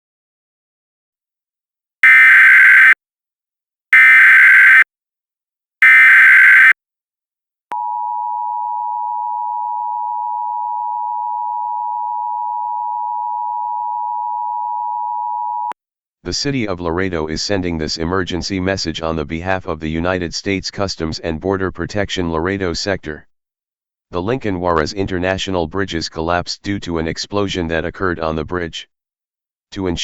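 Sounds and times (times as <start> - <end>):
digital data bursts: 2.0 - 3.0, 4.0 - 4.8, 5.8 - 6.7
steady two-tone attention signal: 2.0 - 3.0, 4.0 - 4.8, 5.8 - 6.7.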